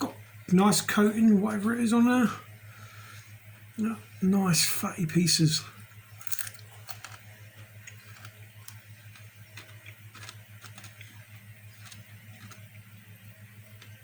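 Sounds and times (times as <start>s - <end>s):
chewing crunchy food: 5.9s - 14.0s.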